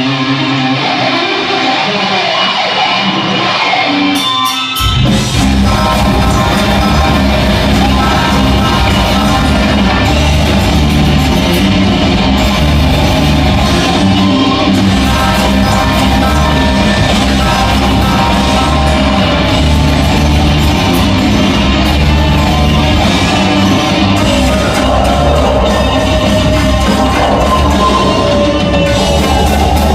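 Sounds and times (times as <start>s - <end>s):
live heavy metal band: 0.0s - 29.9s
person singing or shouting: 5.0s - 11.6s, 13.4s - 29.9s.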